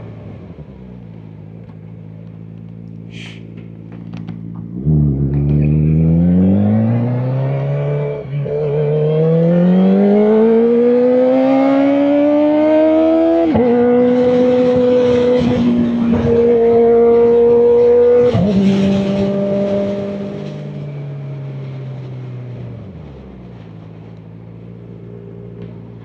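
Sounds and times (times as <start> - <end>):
motorcycle engine accelerating hard: 2.9 - 23.3.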